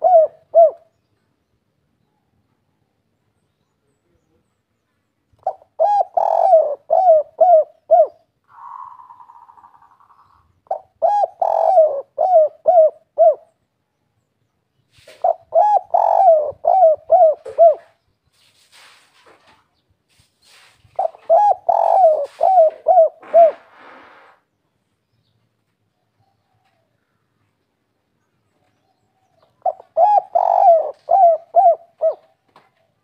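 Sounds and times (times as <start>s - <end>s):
dove cooing: 0.0s - 1.0s, 5.4s - 13.6s, 15.0s - 18.0s, 20.9s - 24.3s, 28.8s - 33.0s.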